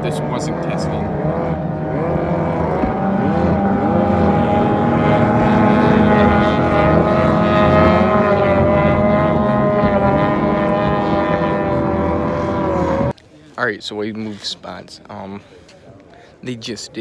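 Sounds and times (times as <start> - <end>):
race boat engines droning: 0.0 - 13.1.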